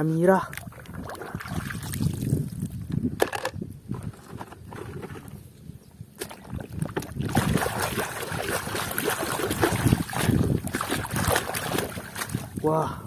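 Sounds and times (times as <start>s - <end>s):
water sloshing and splashing: 0.4s - 2.8s, 6.2s - 12.7s
plastic toy knocks and clicks: 3.2s - 3.6s.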